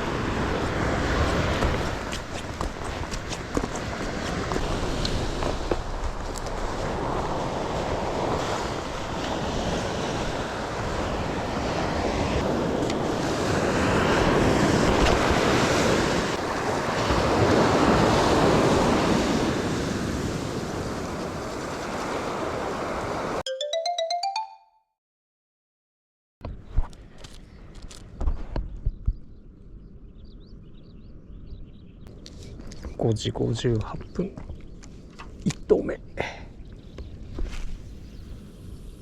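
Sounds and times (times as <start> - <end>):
wind buffeting microphone: 0.0 - 23.0
surf breaking on beach: 0.0 - 23.4
electronic chime rising tones: 23.5 - 24.8.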